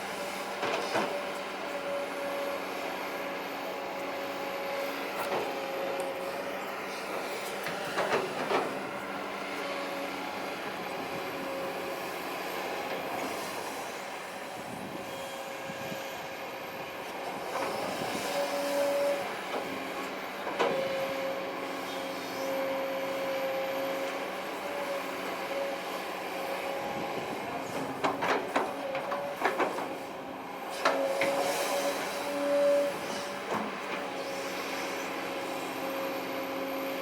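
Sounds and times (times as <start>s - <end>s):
excavator engine drone: 0.0s - 37.0s
hydraulic whine: 30.2s - 37.0s.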